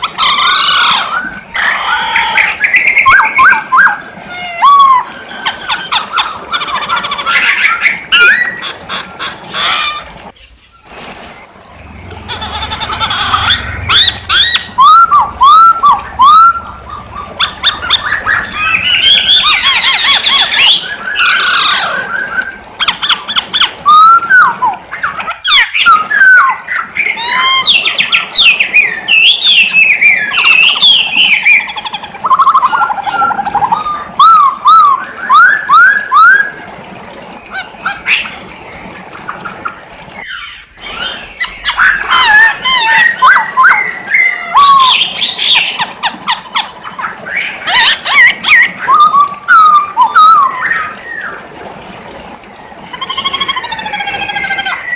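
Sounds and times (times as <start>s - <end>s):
laughingthrush whistled song: 2.2s - 4.0s, 13.2s - 22.6s, 23.3s - 36.6s, 40.3s - 45.8s
sharp harsh bird calls: 11.9s - 36.4s.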